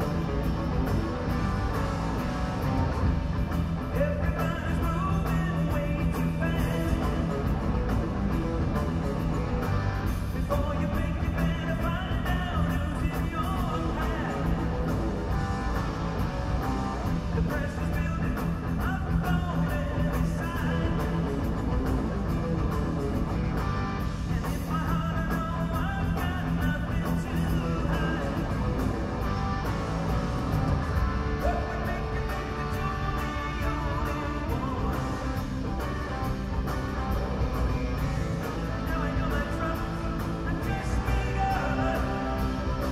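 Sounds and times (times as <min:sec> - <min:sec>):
drums: 0:00.0 - 0:42.9
electric guitar: 0:00.0 - 0:42.9
person singing: 0:31.3 - 0:36.4, 0:37.6 - 0:42.9.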